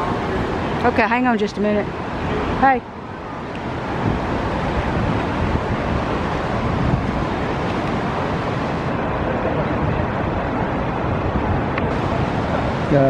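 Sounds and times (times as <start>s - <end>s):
river rapids rushing: 0.0s - 13.0s
wind buffeting microphone: 0.0s - 13.0s.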